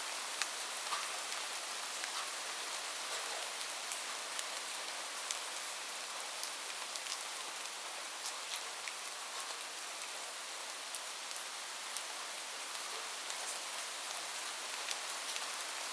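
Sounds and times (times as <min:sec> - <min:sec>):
steady rain hiss: 0:00.0 - 0:15.9
raindrops ticking on surface: 0:00.2 - 0:10.2, 0:10.9 - 0:12.1.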